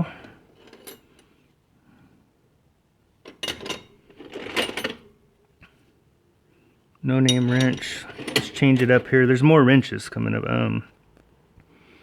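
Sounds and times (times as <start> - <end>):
steel wrenches clinking: 3.3 - 5.1, 7.2 - 9.1.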